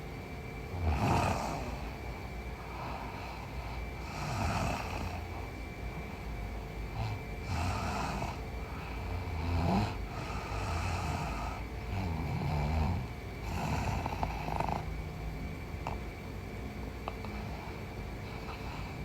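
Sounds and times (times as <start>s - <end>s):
woman snoring: 0.7s - 5.6s, 6.8s - 15.0s.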